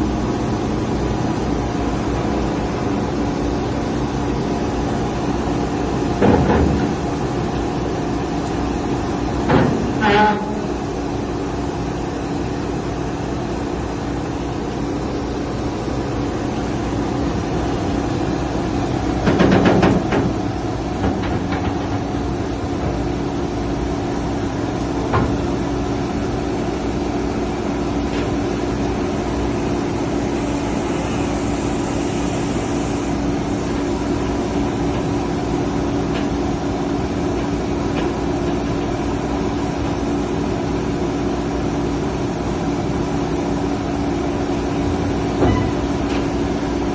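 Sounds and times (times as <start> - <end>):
excavator engine running: 0.0 - 46.9
rattling knocks: 19.2 - 20.4.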